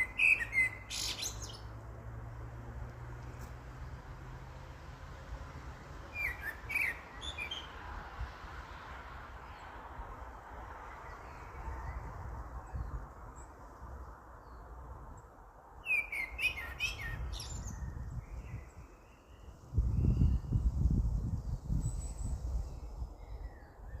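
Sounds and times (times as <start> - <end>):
whistled bird notes: 0.0 - 1.7, 6.1 - 7.7, 15.8 - 20.5
songbirds chirping: 0.0 - 24.0.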